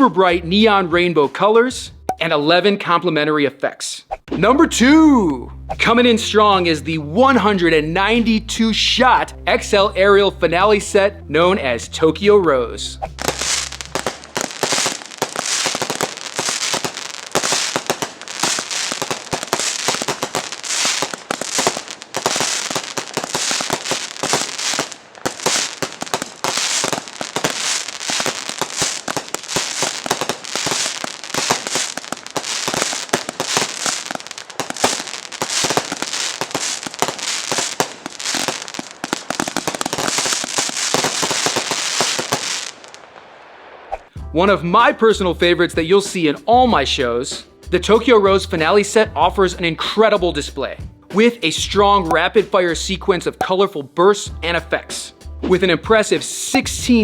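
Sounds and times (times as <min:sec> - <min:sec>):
fireworks firing with crackle: 0:13.1 - 0:44.1.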